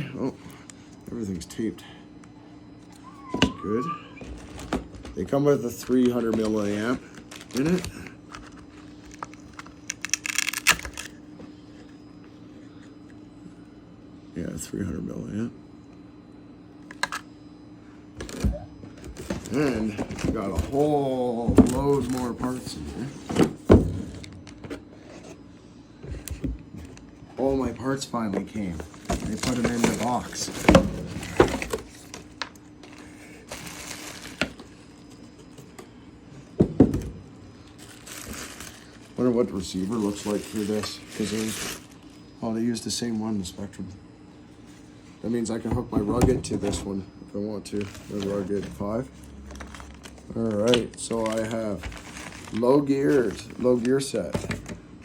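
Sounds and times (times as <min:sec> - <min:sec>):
faint steady hum: 0:00.0 - 0:55.0
packaging rustling and tearing: 0:04.4 - 0:11.2, 0:28.6 - 0:34.8, 0:37.8 - 0:42.1, 0:47.7 - 0:54.0.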